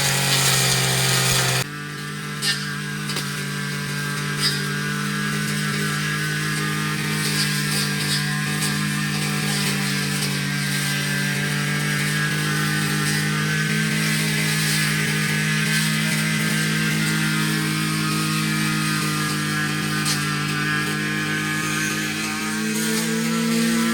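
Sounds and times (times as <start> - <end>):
grass-cutter engine running: 0.0 - 23.9.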